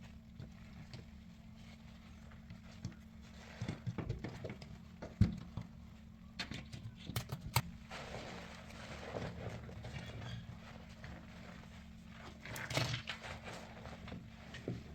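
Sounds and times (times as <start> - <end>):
soapy sponge squishing: 7.7 - 14.9.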